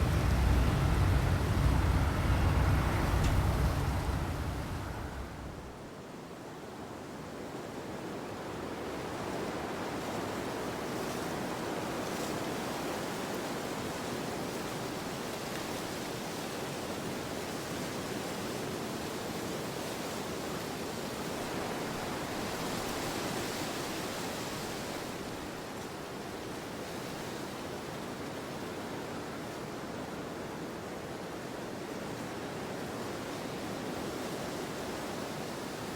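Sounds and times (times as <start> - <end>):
gusty wind through trees: 0.0 - 6.2.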